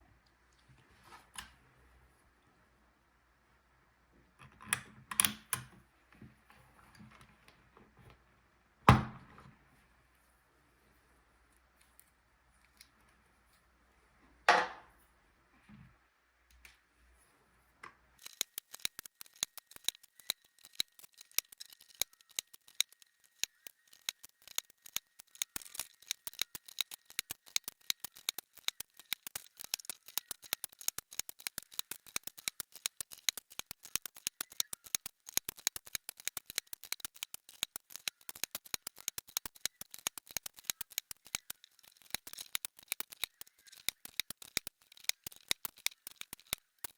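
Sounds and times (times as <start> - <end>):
plastic keyboard keys clicking: 4.4 - 5.8, 18.2 - 46.9.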